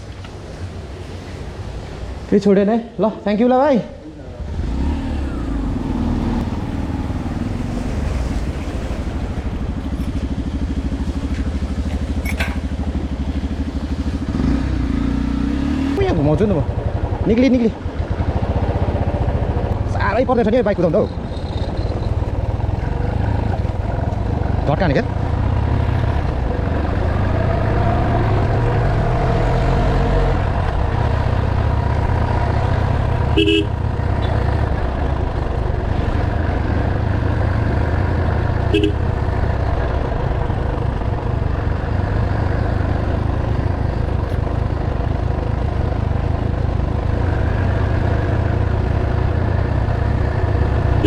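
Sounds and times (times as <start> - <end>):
motorcycle engine running: 9.2 - 51.0.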